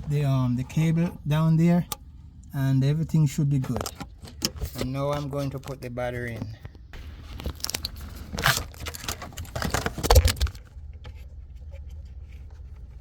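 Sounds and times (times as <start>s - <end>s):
plastic and metal clattering: 3.6s - 12.6s.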